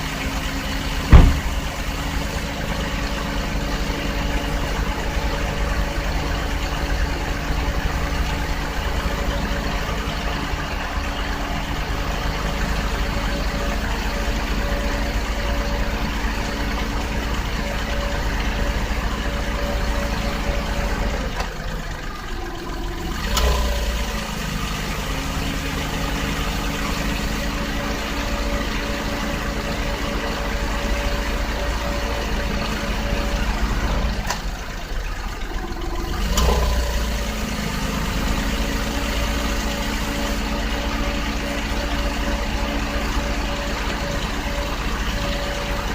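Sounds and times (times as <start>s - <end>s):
car engine idling: 0.0s - 45.9s
short knock: 1.1s - 1.8s.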